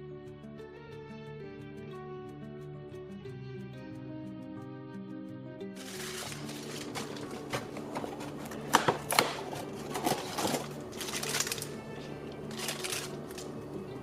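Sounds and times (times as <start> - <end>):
soft background music: 0.0 - 14.0
plastic pieces clicking and rustling: 5.8 - 11.8, 12.4 - 13.6.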